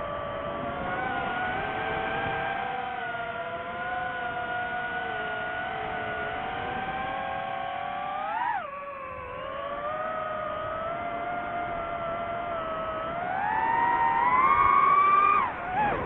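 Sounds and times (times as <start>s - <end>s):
drone propellers whining: 0.0s - 16.0s.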